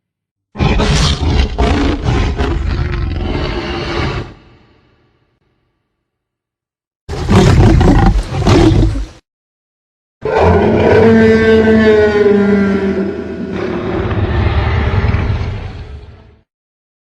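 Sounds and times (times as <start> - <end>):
dinosaur roar: 0.6 - 4.6, 10.2 - 16.4.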